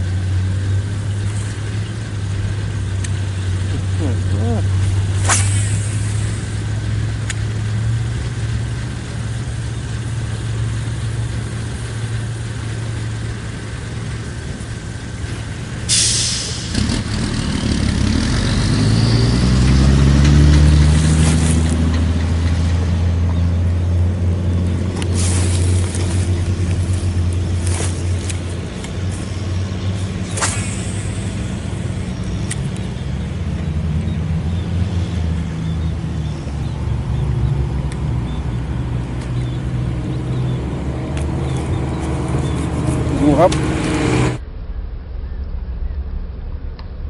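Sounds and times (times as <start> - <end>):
vehicle engine running: 0.0 - 47.0
loud hissing: 3.9 - 7.1, 9.1 - 17.7, 29.1 - 32.2.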